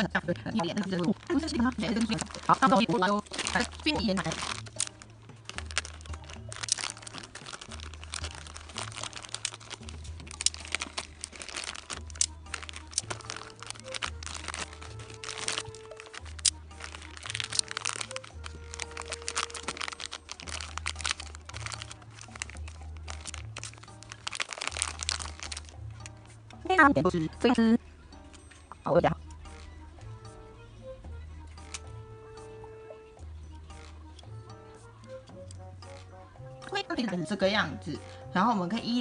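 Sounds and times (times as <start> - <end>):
background music with bass line: 0.0 - 39.0
packaging crinkling: 0.6 - 26.4.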